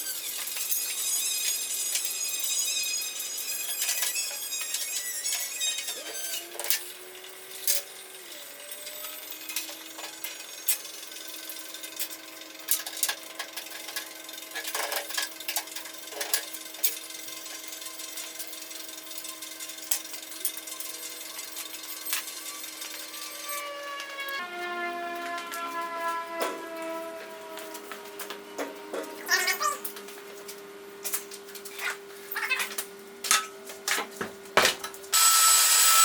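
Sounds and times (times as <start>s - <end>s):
small power tool motor running: 0.0s - 12.6s, 16.5s - 24.4s, 35.1s - 36.0s.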